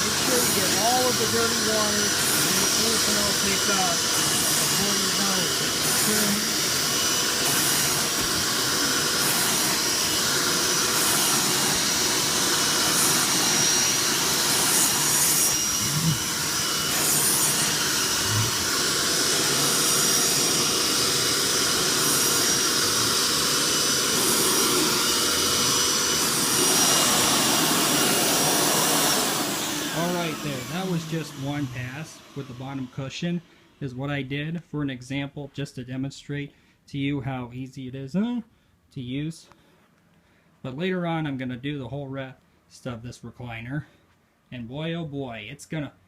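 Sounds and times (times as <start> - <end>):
suction hiss: 0.0 - 32.9
carpet cleaner motor whine: 0.0 - 33.8.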